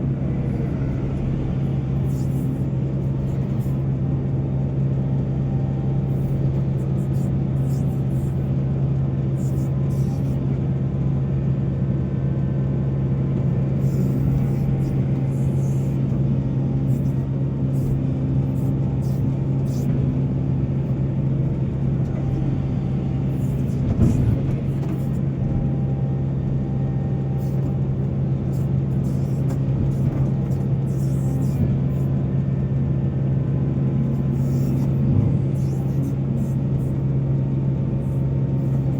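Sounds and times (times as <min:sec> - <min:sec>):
heavy diesel machinery drone: 0:00.0 - 0:38.9.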